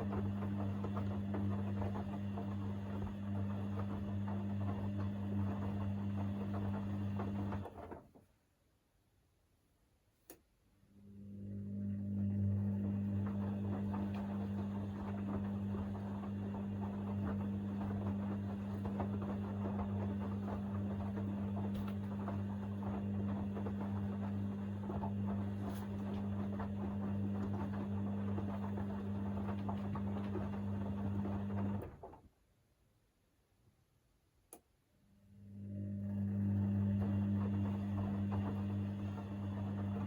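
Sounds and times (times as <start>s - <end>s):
washing machine motor humming: 0.0s - 8.2s, 10.8s - 32.4s, 35.1s - 40.0s
laundry and water sloshing: 13.0s - 32.1s.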